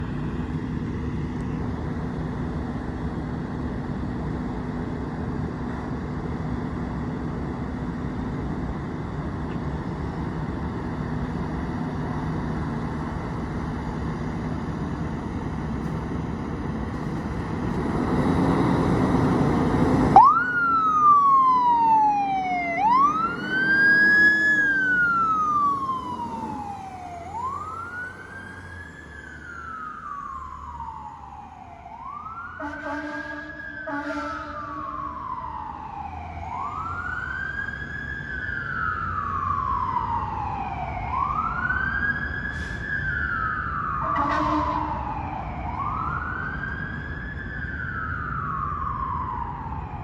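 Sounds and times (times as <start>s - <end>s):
fire engine rumbling: 0.0s - 50.0s
siren wailing: 18.8s - 50.0s.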